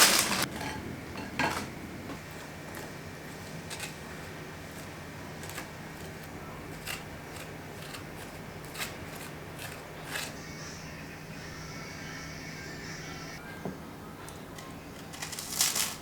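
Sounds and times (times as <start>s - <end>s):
kitchen utensils clicking: 0.0s - 1.7s
steady low hum: 0.0s - 14.3s.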